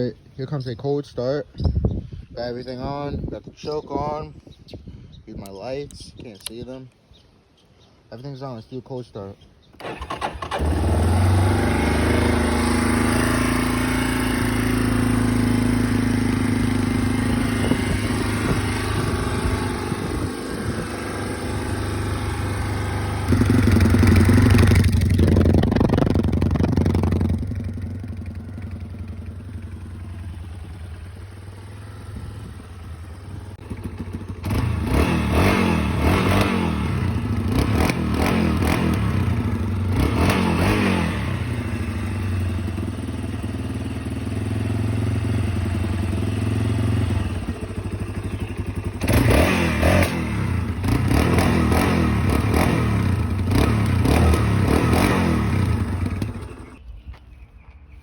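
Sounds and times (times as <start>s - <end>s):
atv engine idling and revving: 9.8s - 56.8s.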